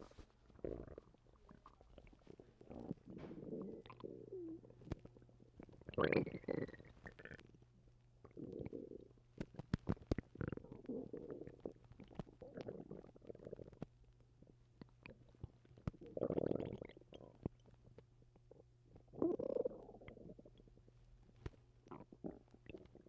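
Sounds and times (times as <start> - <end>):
stomach gurgling and rumbling: 0.0 - 7.6, 8.2 - 23.0
small pops and clicks: 9.4 - 10.6.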